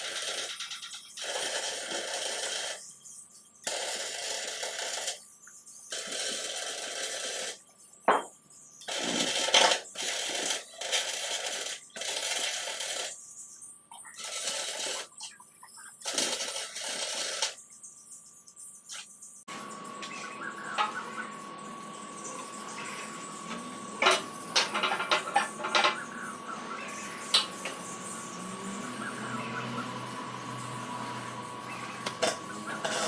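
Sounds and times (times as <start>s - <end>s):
welder crackling hiss: 3.6s - 5.2s, 5.9s - 7.6s, 8.8s - 13.1s, 14.2s - 15.1s, 16.0s - 17.6s.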